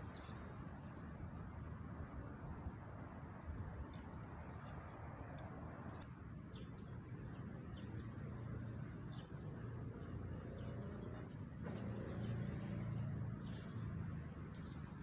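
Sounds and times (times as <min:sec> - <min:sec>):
small bird chirping: 0:06.5 - 0:15.0.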